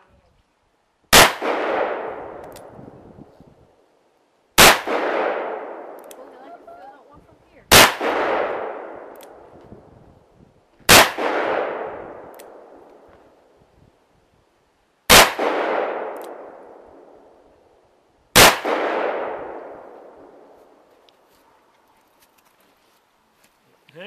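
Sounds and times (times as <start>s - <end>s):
pistol shots with echo: 1.1s - 2.6s, 4.6s - 6.0s, 7.7s - 9.4s, 10.9s - 12.8s, 15.1s - 16.9s, 18.4s - 20.4s.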